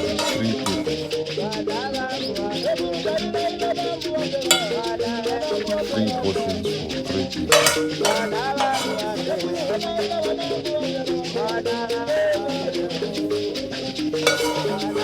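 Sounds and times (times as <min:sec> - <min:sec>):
background music: 0:00.0 - 0:10.7
shaker rhythm: 0:00.0 - 0:15.0.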